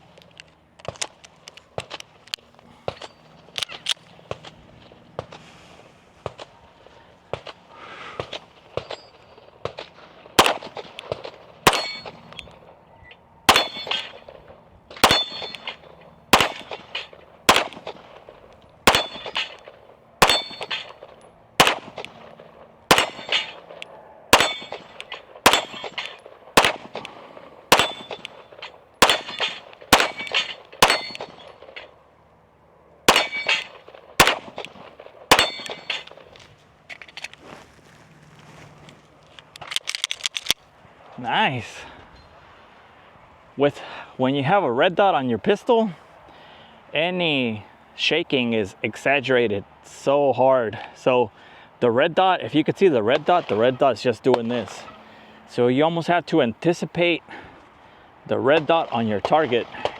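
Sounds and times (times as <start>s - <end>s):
bullets clanging on steel plates: 2.8s - 4.6s, 8.2s - 12.6s, 13.5s - 32.0s, 33.1s - 37.2s
pistol shots: 8.2s - 12.5s, 13.5s - 31.8s, 33.1s - 36.3s.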